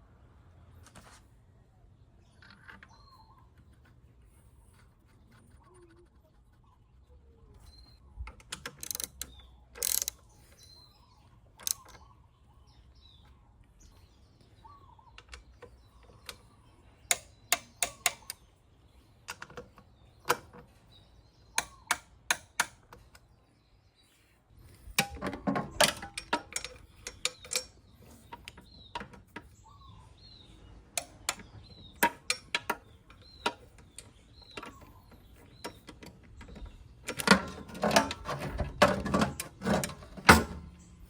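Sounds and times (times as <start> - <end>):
birds chirping faintly: 0.0 - 41.0
hand tools clicking on metal: 8.3 - 10.2, 17.1 - 18.4, 21.6 - 23.2, 25.0 - 29.5, 30.9 - 41.0.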